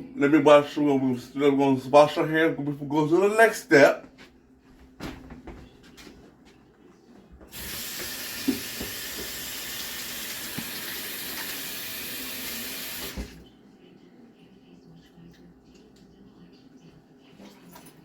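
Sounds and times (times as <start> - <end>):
tap water running into sink: 7.5 - 13.4.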